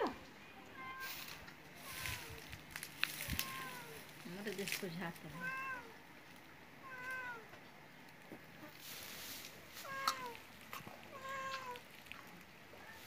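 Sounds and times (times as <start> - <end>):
cat meowing: 3.2 - 4.0, 5.4 - 6.0, 6.8 - 7.5, 9.8 - 10.4, 11.1 - 11.8.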